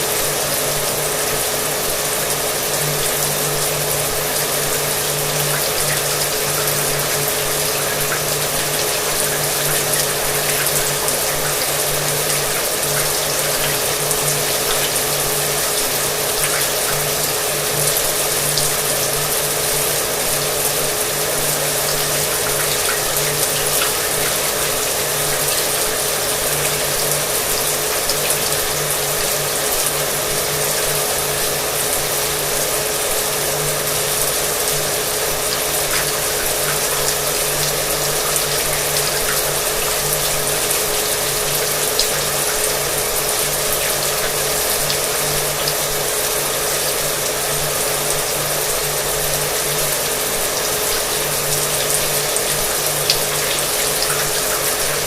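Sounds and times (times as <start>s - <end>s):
shower water spraying: 0.0s - 55.0s.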